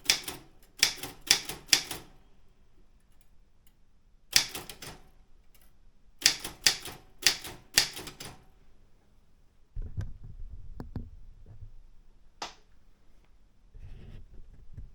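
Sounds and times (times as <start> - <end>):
typewriter key strike: 0.0 - 2.2, 4.3 - 8.4
typewriter keystrokes: 0.0 - 2.2, 4.3 - 8.5
low rumble with light clicks: 9.8 - 12.6.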